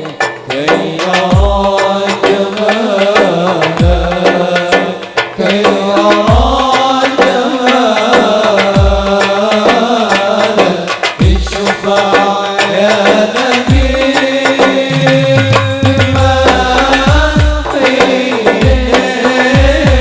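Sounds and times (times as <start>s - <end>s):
devotional song with percussion: 0.0s - 20.0s
deep drum strokes: 14.8s - 17.8s.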